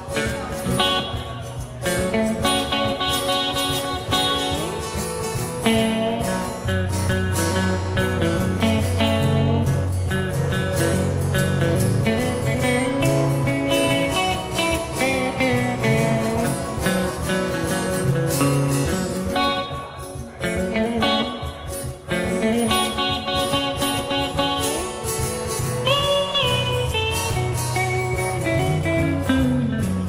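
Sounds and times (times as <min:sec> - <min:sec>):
blues guitar playing: 0:00.0 - 0:30.0.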